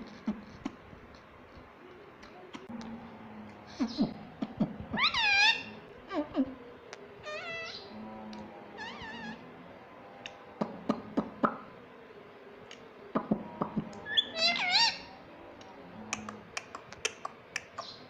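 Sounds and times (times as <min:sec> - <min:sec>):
parrot call: 0:03.7 - 0:06.2, 0:07.2 - 0:08.0, 0:08.8 - 0:09.5, 0:13.4 - 0:15.2
parrot clicking: 0:16.1 - 0:18.0.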